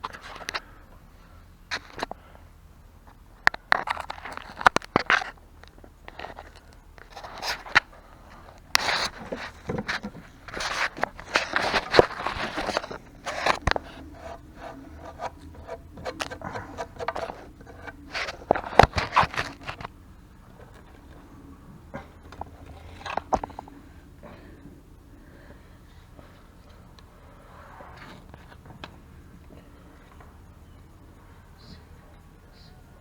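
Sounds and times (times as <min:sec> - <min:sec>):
scraping and rubbing: 0:03.8 - 0:24.5.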